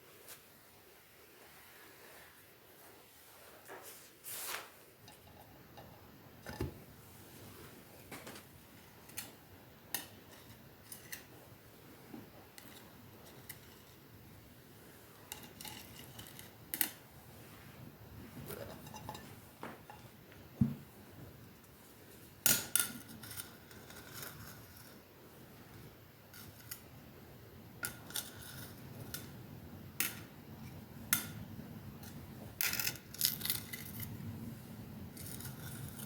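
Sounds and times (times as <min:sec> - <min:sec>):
small objects clicking and clinking: 0:32.0 - 0:34.1.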